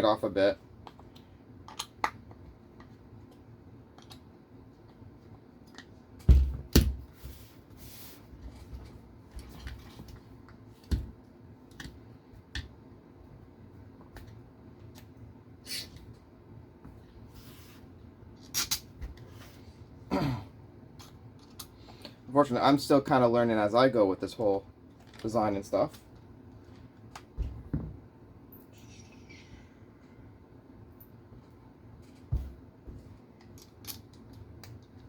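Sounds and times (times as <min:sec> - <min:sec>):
small parts being handled: 0:24.9 - 0:27.4, 0:33.4 - 0:35.0.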